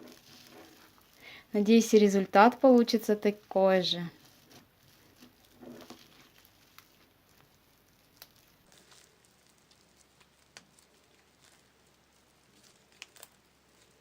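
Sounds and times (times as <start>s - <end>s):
crunchy slime being kneaded: 0.0s - 14.0s.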